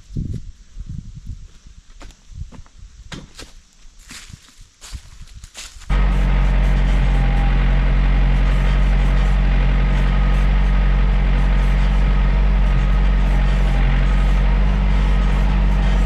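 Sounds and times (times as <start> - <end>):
tractor diesel engine running: 5.9 - 16.0.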